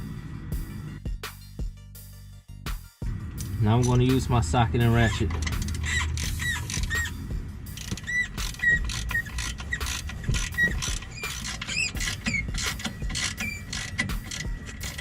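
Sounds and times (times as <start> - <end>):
hand ratchet clicking: 4.8 - 15.0
short squeaks: 5.0 - 15.0.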